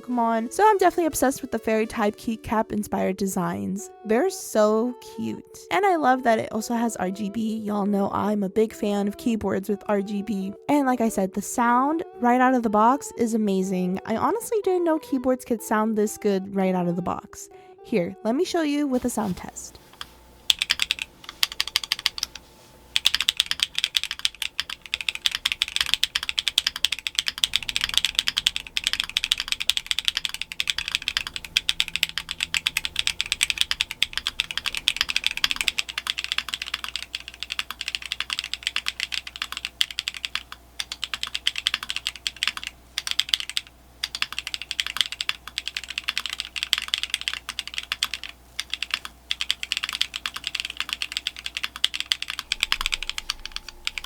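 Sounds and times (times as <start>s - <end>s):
mechanical keyboard typing: 19.9s - 54.0s.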